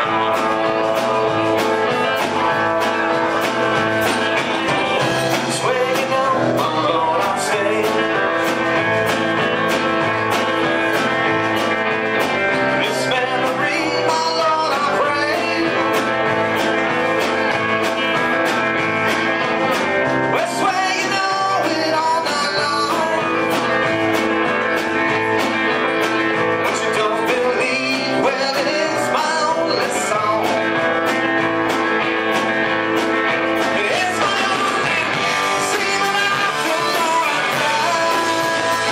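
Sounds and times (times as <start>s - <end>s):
live band guitar number: 0.0s - 38.9s
steady drum beat: 0.0s - 38.9s.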